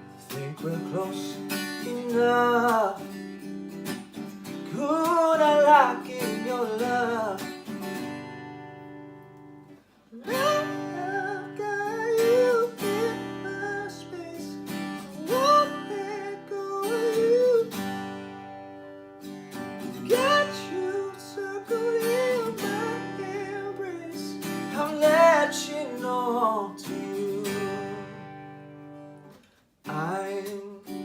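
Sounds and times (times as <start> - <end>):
man singing: 0.0 - 3.2, 4.5 - 7.7, 10.1 - 17.9, 20.0 - 28.4, 29.8 - 31.0
acoustic guitar strumming: 0.0 - 31.0.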